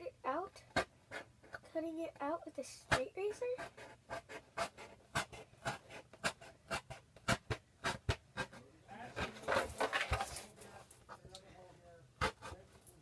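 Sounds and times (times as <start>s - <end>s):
blade scratching cardboard: 0.7s - 1.6s, 2.9s - 10.1s, 12.2s - 12.7s.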